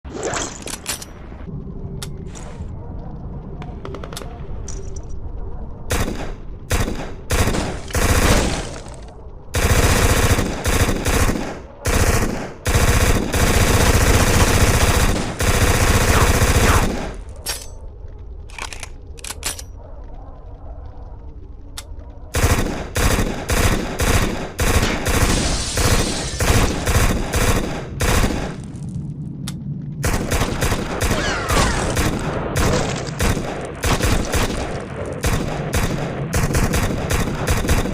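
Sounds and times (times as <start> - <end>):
submachine gun firing bursts: 5.9 - 8.8, 9.6 - 17.2, 22.4 - 28.6, 30.0 - 31.2, 31.8 - 37.9.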